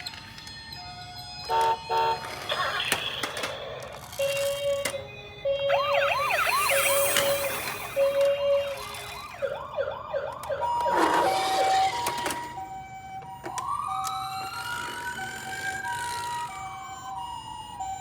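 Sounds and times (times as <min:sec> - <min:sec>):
two-tone hi-lo siren: 0:00.8 - 0:02.4, 0:03.2 - 0:18.0
slow wailing siren: 0:03.3 - 0:18.0
fast warbling siren yelp: 0:04.4 - 0:12.6.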